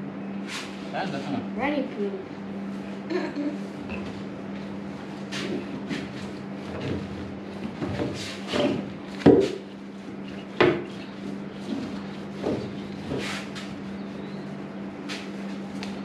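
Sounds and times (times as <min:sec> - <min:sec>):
paint roller scuffing on metal: 0:04.0 - 0:15.8.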